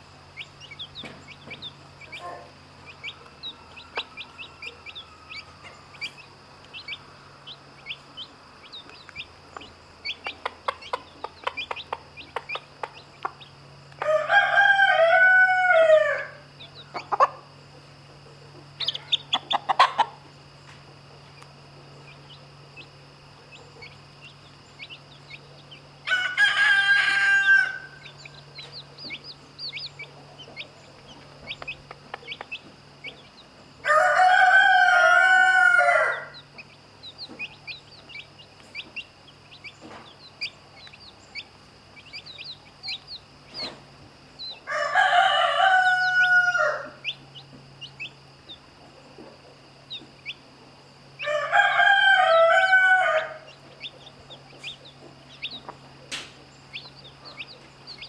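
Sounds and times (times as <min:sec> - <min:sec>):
chicks peeping: 0:00.0 - 0:58.0
rooster crowing: 0:02.1 - 0:06.2, 0:14.0 - 0:17.4, 0:26.0 - 0:28.6, 0:33.8 - 0:36.7, 0:44.5 - 0:47.2, 0:51.2 - 0:53.8.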